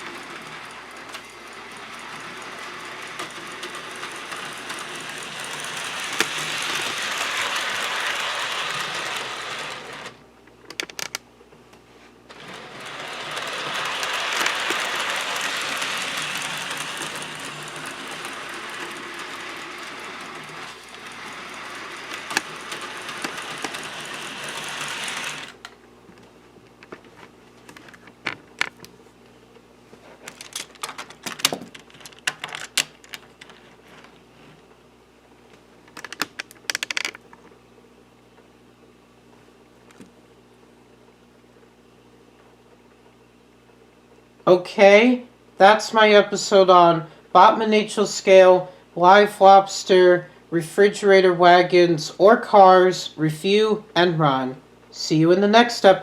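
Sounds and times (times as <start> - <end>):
model train motor whirring: 0.0 - 10.2, 12.3 - 25.6
wheels rattling over rails: 0.0 - 10.2, 12.3 - 25.7.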